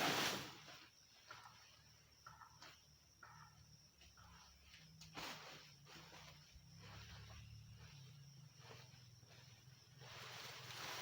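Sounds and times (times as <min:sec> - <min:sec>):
faint low hum: 0:00.5 - 0:11.0
soft rustles: 0:04.1 - 0:11.0.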